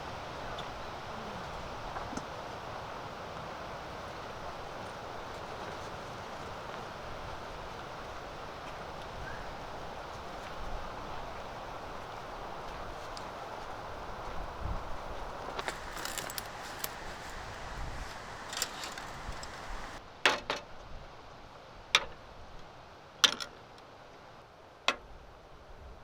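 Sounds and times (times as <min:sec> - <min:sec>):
hiss of wind or surf: 0:00.0 - 0:20.2.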